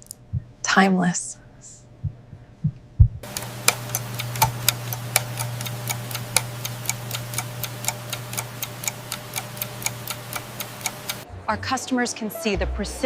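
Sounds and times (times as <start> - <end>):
wristwatch ticking: 3.1 - 11.2.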